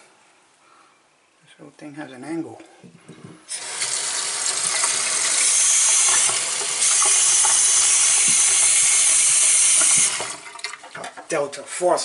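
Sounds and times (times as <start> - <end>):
faucet water running into sink: 3.5 - 11.2.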